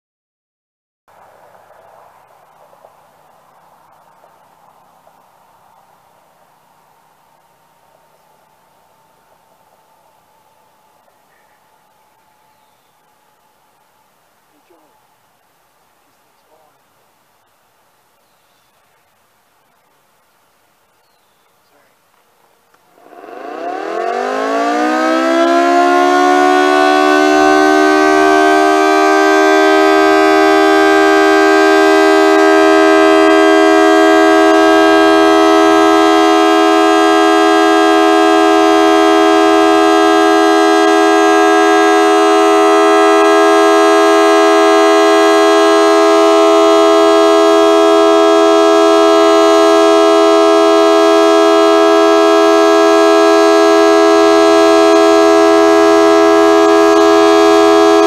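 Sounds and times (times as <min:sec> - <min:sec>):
dual-tone warning siren: 0:23.0 - 0:58.0.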